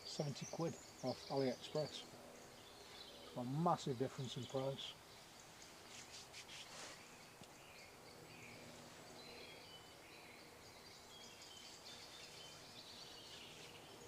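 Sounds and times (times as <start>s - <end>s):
soft rustle: 5.2s - 7.5s.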